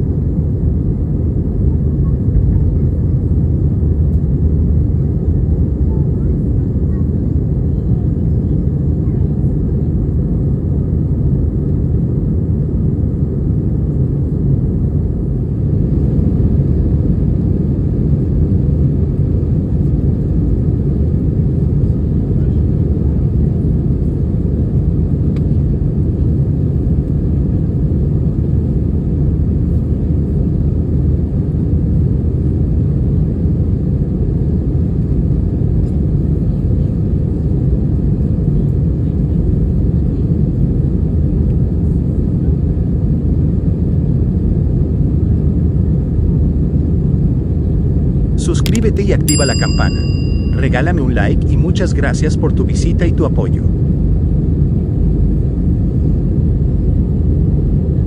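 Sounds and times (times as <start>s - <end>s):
jet engines rumbling: 50.6s - 57.6s.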